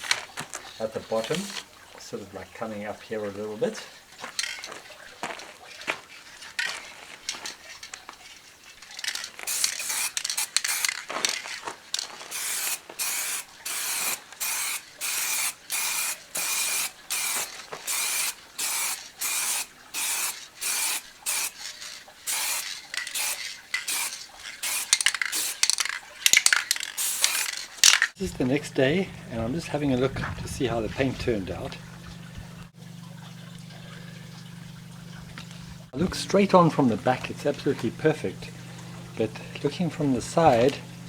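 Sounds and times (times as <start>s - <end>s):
spray paint can hissing: 9.4s - 11.0s, 12.2s - 21.6s, 22.2s - 28.6s.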